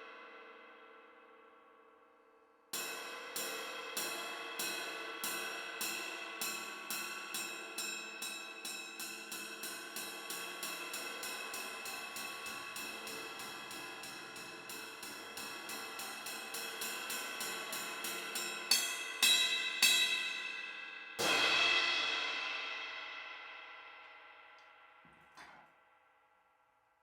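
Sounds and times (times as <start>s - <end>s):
china cymbal strokes: 2.8s - 23.9s
loud cymbal crash: 2.8s - 24.0s.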